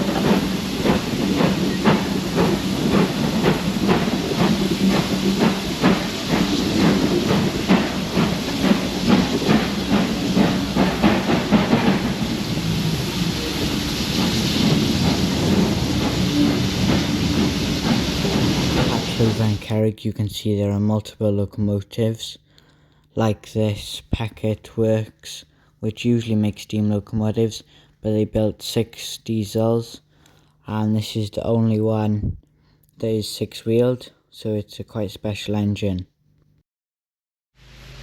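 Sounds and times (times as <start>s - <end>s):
steam hissing: 0.0s - 19.6s, 37.6s - 38.0s
steam locomotive chuffing: 0.0s - 19.6s.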